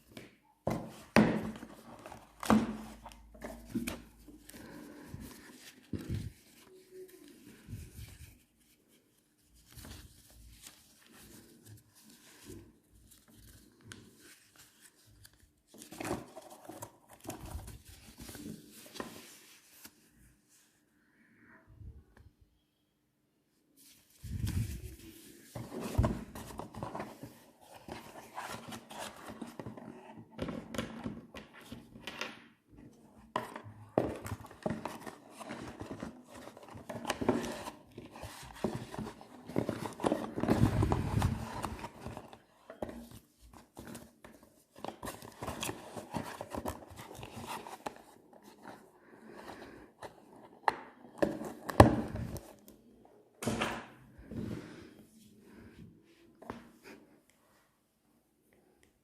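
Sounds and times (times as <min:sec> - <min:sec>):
phone packaging rustling: 0:00.0 - 0:08.8, 0:33.3 - 0:52.8.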